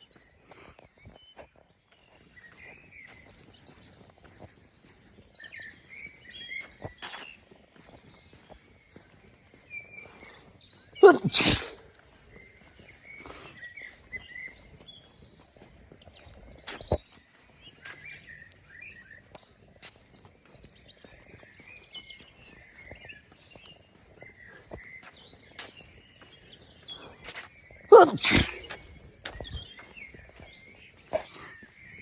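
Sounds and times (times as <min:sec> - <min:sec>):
person sneezing: 0:11.0 - 0:11.8, 0:27.9 - 0:28.7.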